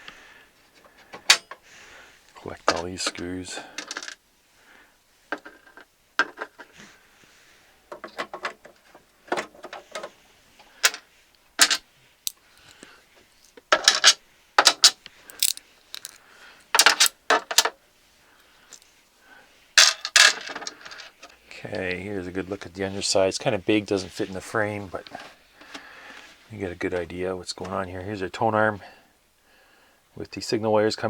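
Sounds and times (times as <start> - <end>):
metal screws clinking: 13.4 - 16.2, 16.8 - 17.1.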